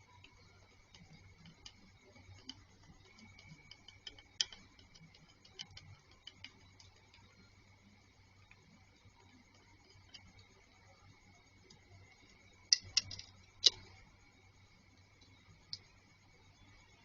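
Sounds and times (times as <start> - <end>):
light clicks and ticks: 0.0 - 7.4, 8.4 - 14.0
faint high-pitched whine: 0.0 - 17.0.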